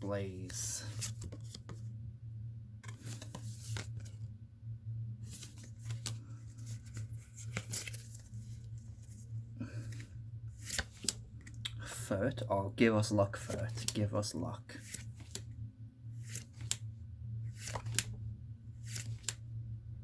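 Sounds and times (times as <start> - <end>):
steady low hum: 0.0 - 20.0
cards handled: 0.9 - 1.8, 2.8 - 4.2, 5.2 - 11.8, 13.4 - 14.1, 14.8 - 15.5, 16.2 - 16.9, 17.5 - 18.1, 18.8 - 19.4.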